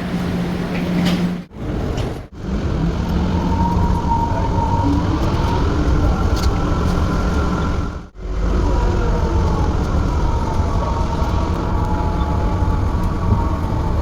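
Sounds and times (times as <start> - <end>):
train steady rumble: 0.0 - 14.0.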